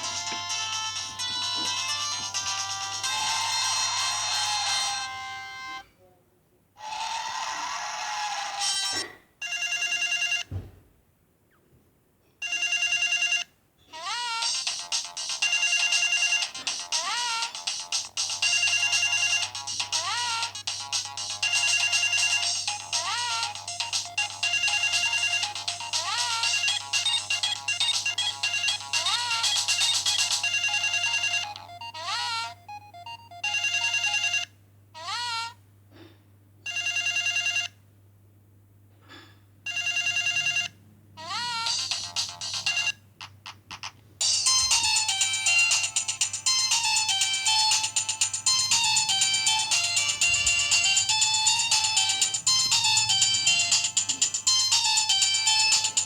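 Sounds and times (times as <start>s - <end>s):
electronic ringtone melody: 0.0s - 5.8s, 14.4s - 34.5s, 39.7s - 40.7s, 41.5s - 43.0s, 44.2s - 56.0s.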